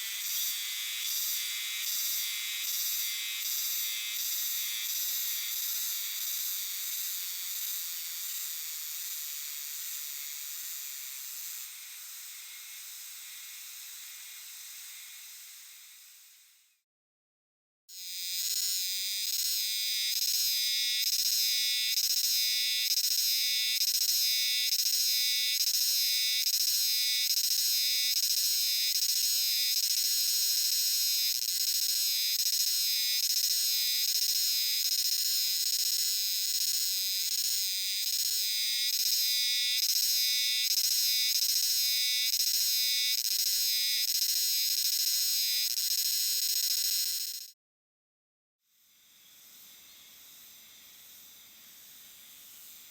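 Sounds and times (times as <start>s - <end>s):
cicadas buzzing in chorus: 0.1s - 5.6s.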